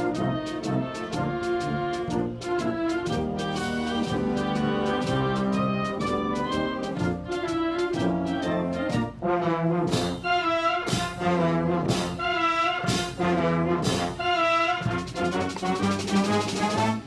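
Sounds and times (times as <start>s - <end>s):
brass band playing chords: 0.0s - 17.0s.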